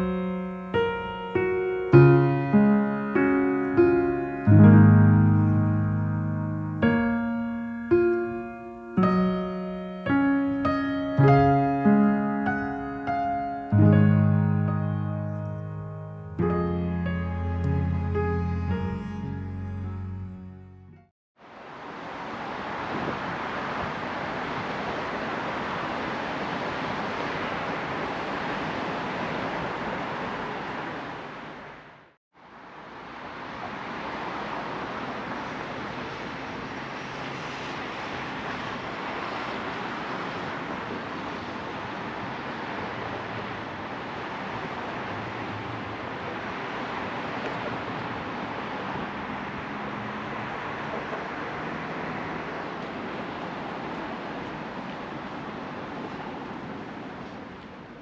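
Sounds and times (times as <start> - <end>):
rushing outdoor ambient noise: 21.4 - 58.0.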